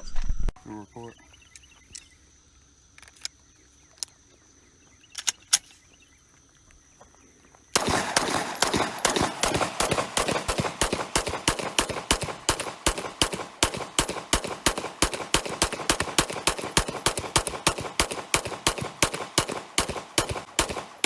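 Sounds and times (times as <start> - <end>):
high insect drone: 0.6 - 21.0
rapid semi-automatic gunfire: 7.8 - 21.0.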